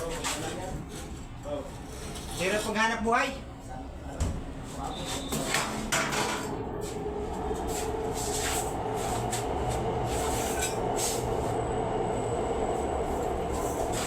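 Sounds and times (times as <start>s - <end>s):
machine rumble and hum: 5.9s - 14.0s.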